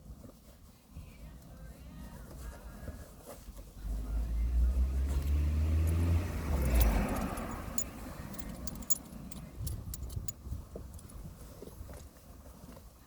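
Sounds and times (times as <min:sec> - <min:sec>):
small hard parts clicking: 0:06.6 - 0:11.1.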